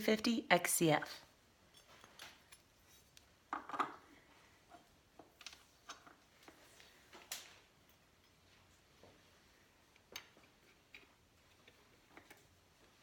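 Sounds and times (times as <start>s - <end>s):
small metal parts and tools clinking: 1.6s - 4.1s.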